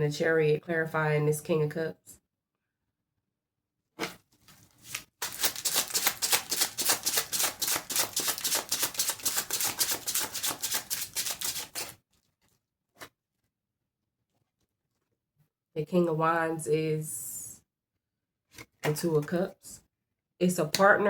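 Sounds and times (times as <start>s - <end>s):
cards being shuffled: 4.1s - 12.0s
soft card rustles: 4.1s - 13.1s.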